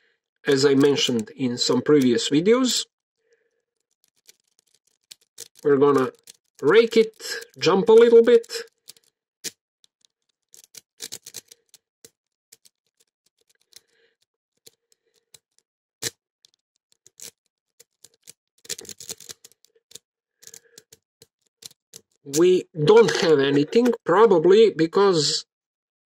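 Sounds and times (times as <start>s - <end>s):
lock pick clicking and scraping: 3.2s - 23.9s.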